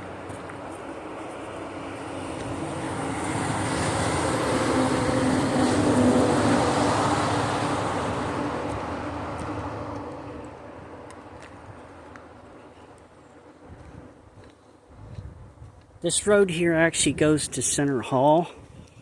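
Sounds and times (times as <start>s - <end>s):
motor vehicle passing by: 0.0s - 11.0s.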